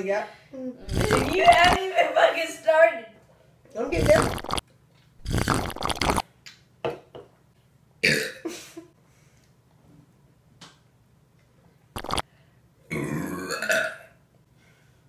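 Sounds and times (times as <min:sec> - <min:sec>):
woman burping: 0:00.8 - 0:01.8, 0:08.0 - 0:08.4, 0:12.9 - 0:14.1.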